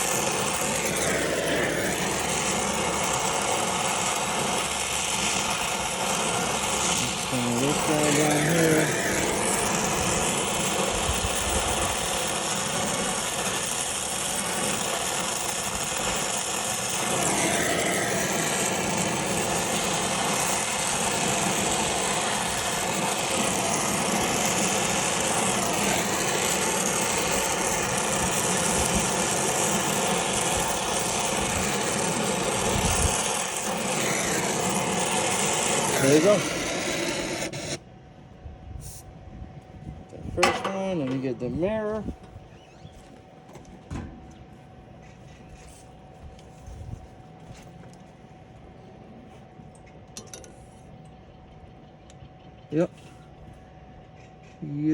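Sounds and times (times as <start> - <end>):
brazing torch flame hissing: 0.0 - 37.8, 38.8 - 39.1.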